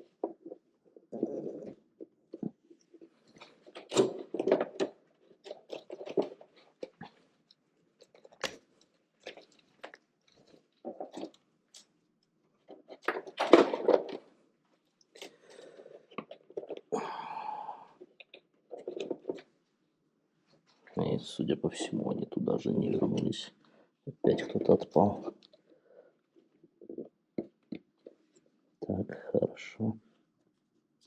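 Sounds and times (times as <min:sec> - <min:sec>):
clips and wires clicking and rustling: 0:02.8 - 0:11.9.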